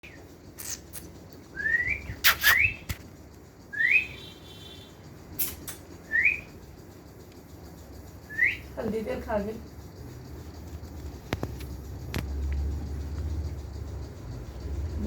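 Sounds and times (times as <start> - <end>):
parrot whistling: 1.5 - 2.9, 3.7 - 6.5, 8.3 - 8.6
sharp clicks: 5.4 - 6.0.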